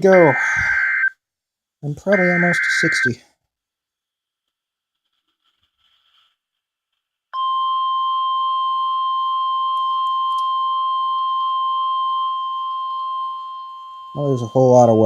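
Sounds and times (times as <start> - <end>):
loud steady alert tone: 0.0 - 1.1, 1.9 - 3.2.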